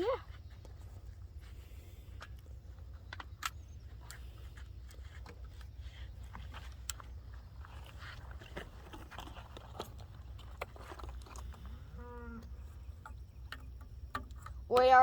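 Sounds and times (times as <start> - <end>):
cow mooing: 11.7 - 12.5.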